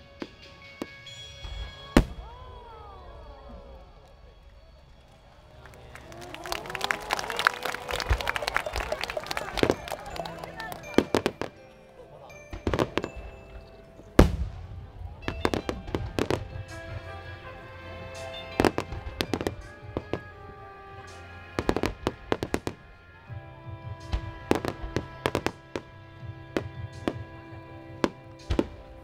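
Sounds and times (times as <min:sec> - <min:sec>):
music: 0:00.0 - 0:29.0
fireworks cracking and booming: 0:12.5 - 0:13.3, 0:14.2 - 0:23.0, 0:23.6 - 0:29.0.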